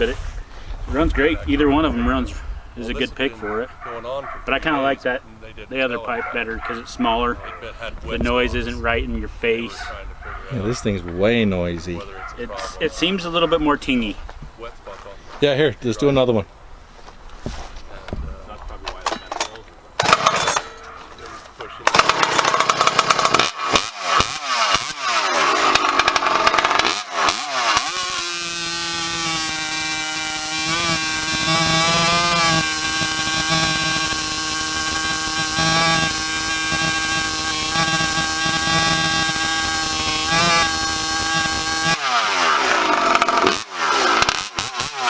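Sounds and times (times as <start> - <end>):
chainsaw revving: 20.0 - 20.8, 21.8 - 45.0.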